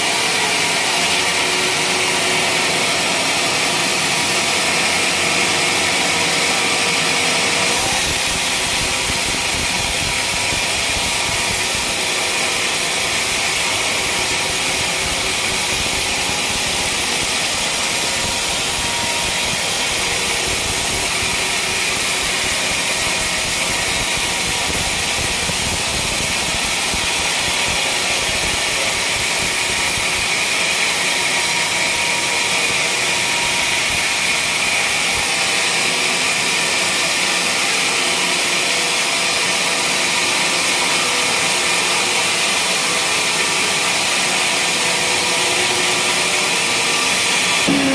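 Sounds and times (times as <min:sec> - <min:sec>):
sawmill machine running: 0:00.0 - 0:47.9.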